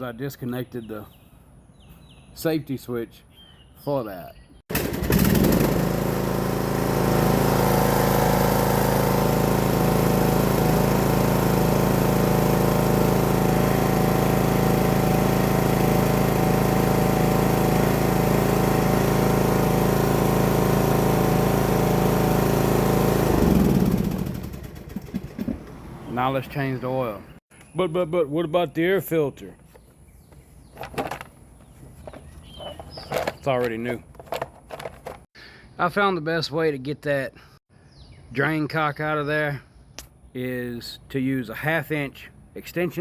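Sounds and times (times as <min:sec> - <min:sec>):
riding mower engine running: 0:04.7 - 0:27.1, 0:30.7 - 0:35.3.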